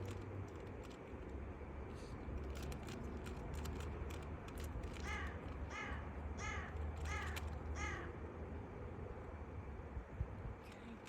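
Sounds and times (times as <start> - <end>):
crow cawing: 5.0 - 8.2.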